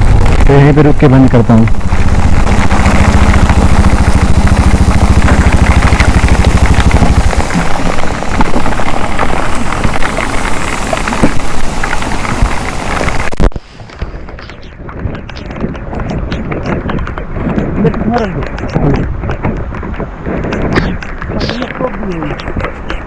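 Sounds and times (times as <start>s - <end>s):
heavy rain pattering: 0.0s - 23.0s
motorcycle engine idling: 1.6s - 8.4s.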